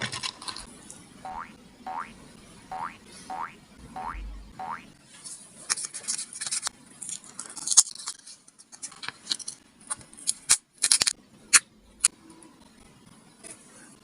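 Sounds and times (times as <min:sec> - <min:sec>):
paper crinkling: 0:00.0 - 0:00.7.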